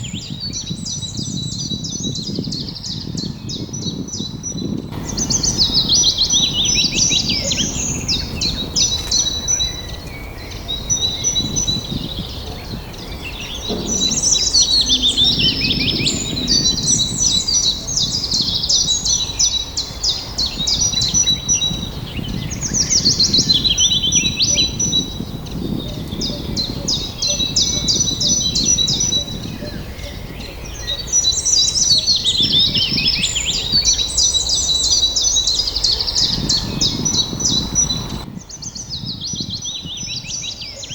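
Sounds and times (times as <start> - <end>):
songbirds singing: 0.0 - 40.9
low background rumble: 5.0 - 19.1.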